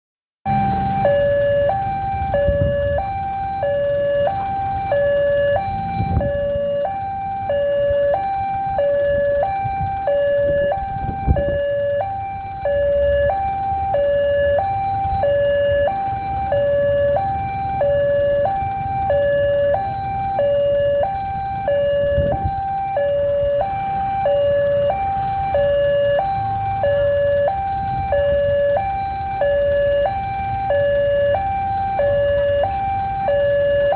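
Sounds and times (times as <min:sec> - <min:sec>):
two-tone crossing alarm: 0:00.5 - 0:33.9.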